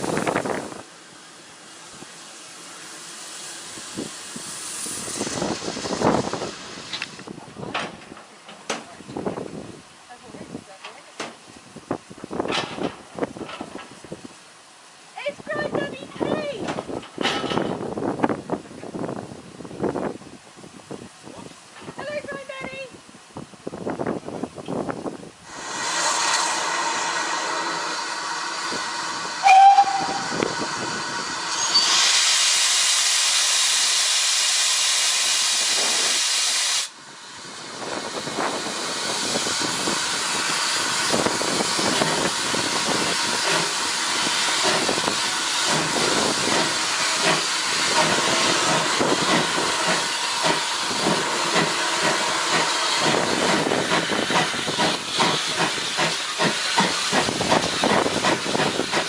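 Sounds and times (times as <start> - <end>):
hiss of escaping steam: 0.0 - 7.4, 25.4 - 59.0
steam locomotive whistle: 29.4 - 30.6.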